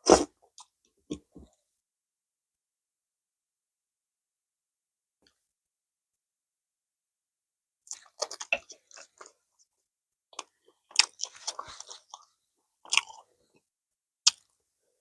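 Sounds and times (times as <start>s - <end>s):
wet chewing and mouth clicks: 7.9s - 9.3s, 10.4s - 12.3s, 12.9s - 13.3s, 14.3s - 14.5s.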